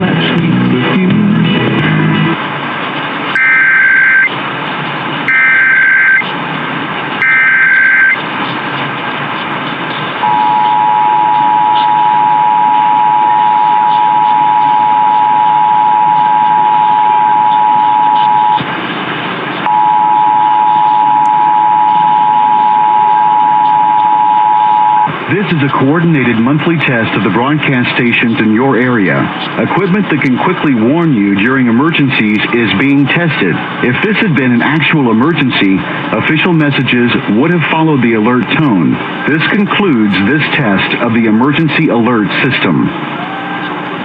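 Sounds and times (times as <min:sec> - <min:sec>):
radio static hiss: 0:03.3 - 0:04.3, 0:05.2 - 0:06.3, 0:07.1 - 0:43.0
harsh dual tone alert signal: 0:03.4 - 0:04.3, 0:05.3 - 0:06.2, 0:07.2 - 0:08.2, 0:10.2 - 0:18.6, 0:19.7 - 0:25.1
shrill digital data warble: 0:03.4 - 0:04.3, 0:05.3 - 0:06.2.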